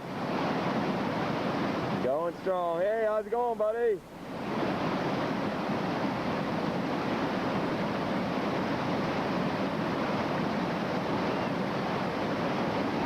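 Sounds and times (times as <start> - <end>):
river rapids roaring: 0.0 - 13.0.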